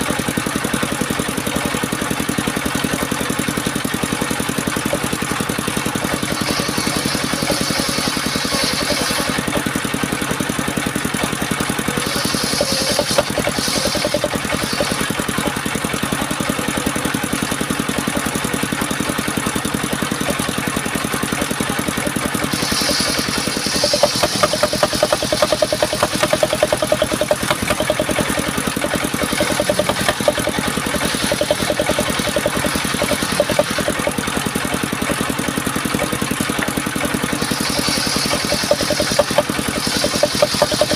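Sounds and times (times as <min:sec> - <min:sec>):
engine driving circular saw: 0:00.0 - 0:40.9.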